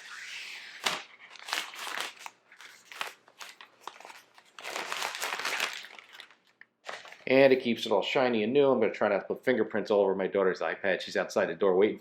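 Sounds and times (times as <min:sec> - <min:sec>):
plastic wrap crinkling: 0:00.8 - 0:07.7.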